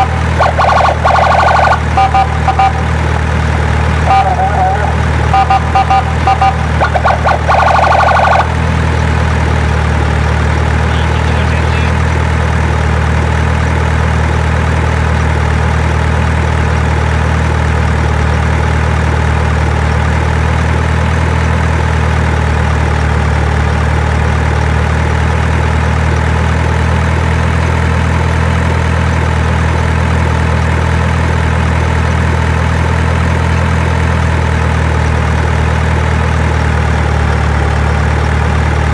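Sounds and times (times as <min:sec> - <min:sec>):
rapid electronic beeping: 0:00.0 - 0:02.9, 0:04.0 - 0:08.6
engine idling hum: 0:00.0 - 0:38.9.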